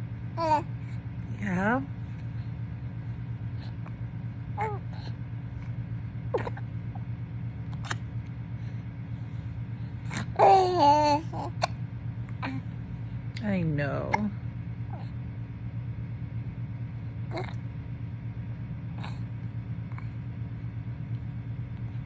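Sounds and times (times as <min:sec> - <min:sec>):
steady low hum: 0:00.0 - 0:22.0
baby babbling: 0:00.4 - 0:00.7, 0:04.6 - 0:05.1, 0:10.1 - 0:11.7, 0:17.3 - 0:17.6
baby hiccuping: 0:06.4 - 0:06.6.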